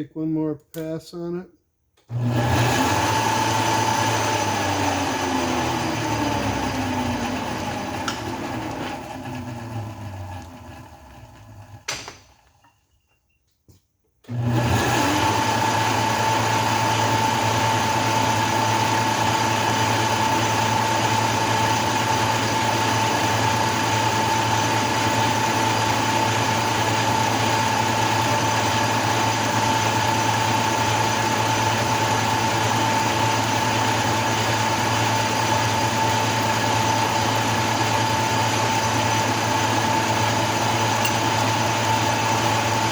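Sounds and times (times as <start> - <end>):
metal lathe running: 2.4 - 11.6, 14.6 - 42.9.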